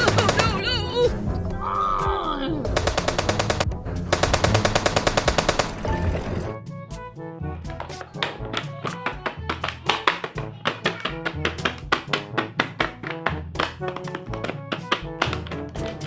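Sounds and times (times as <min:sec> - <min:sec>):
upbeat music with percussive beat: 0:06.6 - 0:16.0.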